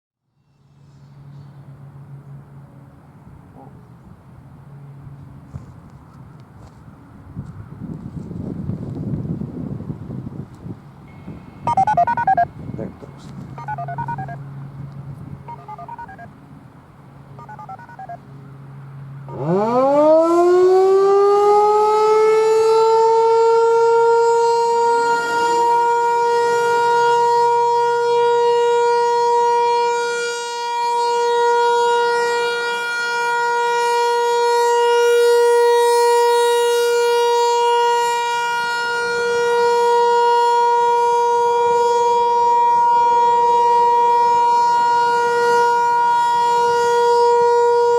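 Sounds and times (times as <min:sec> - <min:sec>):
warning siren winding up: 0:11.6 - 0:12.6, 0:13.6 - 0:14.5, 0:15.5 - 0:16.3, 0:17.4 - 0:18.3.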